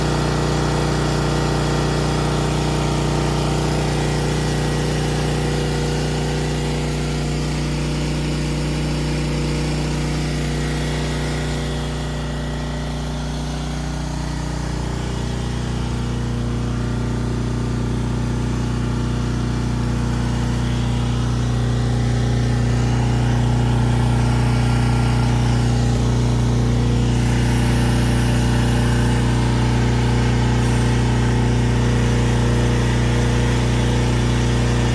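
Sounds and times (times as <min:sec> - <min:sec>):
engine running with deep hum: 0:00.0 - 0:34.9.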